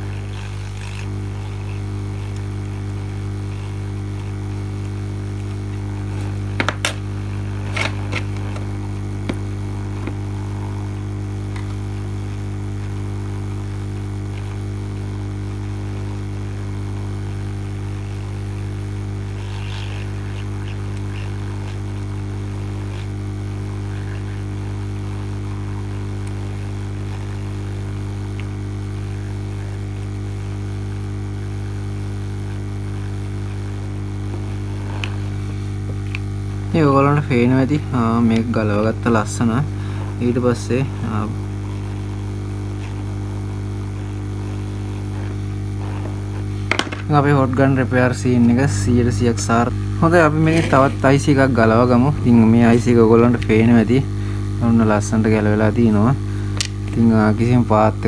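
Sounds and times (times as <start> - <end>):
hot air station humming: 0.0 - 31.5, 32.4 - 58.0.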